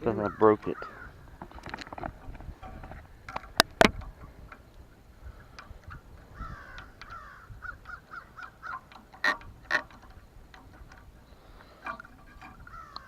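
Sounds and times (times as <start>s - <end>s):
crow cawing: 0.2s - 1.2s, 6.3s - 9.9s, 12.7s - 13.0s
faint clicks: 5.4s - 13.0s.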